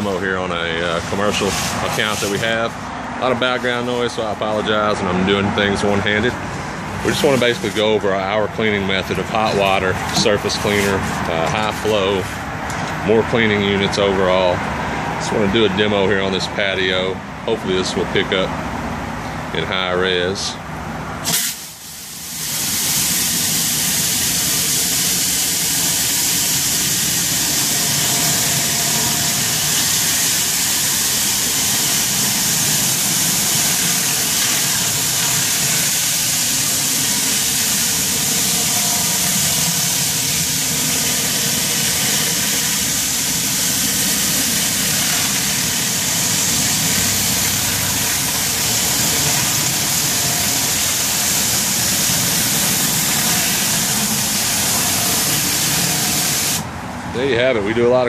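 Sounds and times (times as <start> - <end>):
high-pressure water hissing on concrete: 0.0 - 2.8, 7.0 - 8.4, 21.3 - 56.7
pressure washer engine droning: 0.0 - 58.0.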